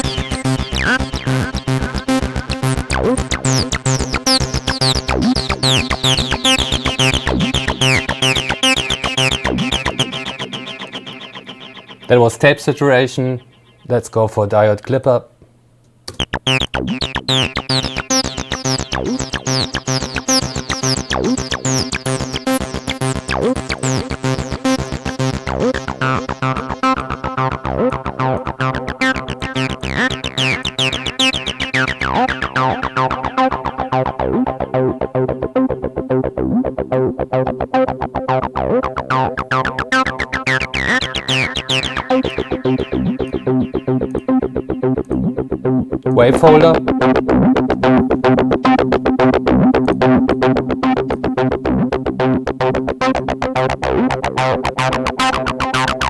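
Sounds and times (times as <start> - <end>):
distorted acid bass line: 0.0 - 12.6, 16.1 - 56.0.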